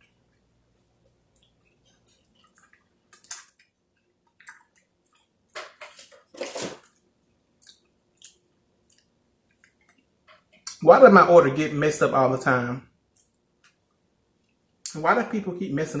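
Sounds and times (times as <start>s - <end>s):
wet chewing and lip smacking: 0.0s - 5.4s, 7.6s - 10.8s.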